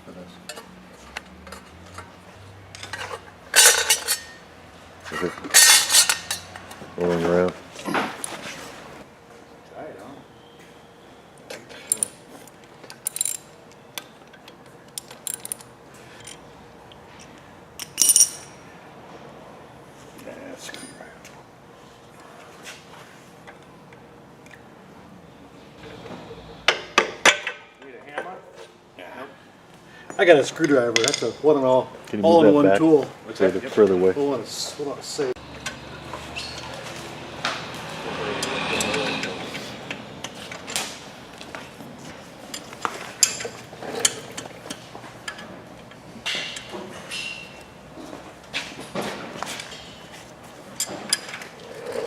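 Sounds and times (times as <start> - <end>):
metal parts clinking: 2.8 - 4.4, 5.2 - 6.8, 11.8 - 12.2, 12.9 - 13.6, 14.9 - 16.4, 17.8 - 18.6
metallic clinks: 17.8 - 18.6.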